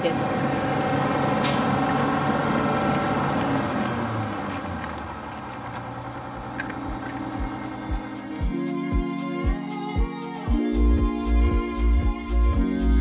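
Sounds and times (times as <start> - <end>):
bus engine running: 0.0 - 9.7
music beat: 6.5 - 13.0.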